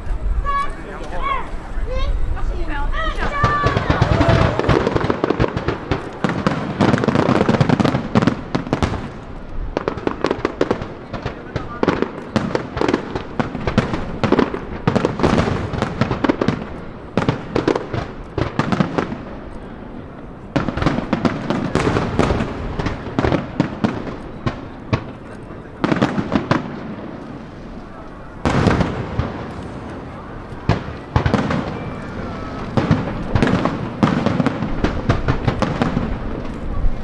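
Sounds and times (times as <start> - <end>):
fireworks bangs and crackling: 0.0 - 37.0.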